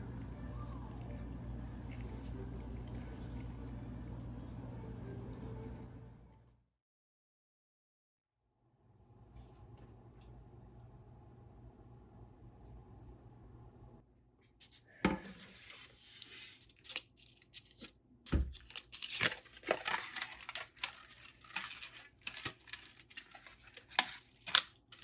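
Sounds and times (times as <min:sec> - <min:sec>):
tearing and crinkling: 0:15.4 - 0:25.0.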